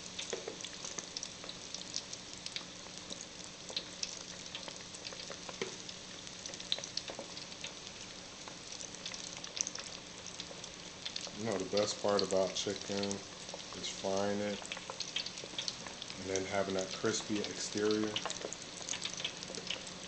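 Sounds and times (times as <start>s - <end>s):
chicken deep-frying in oil: 0.0s - 20.0s.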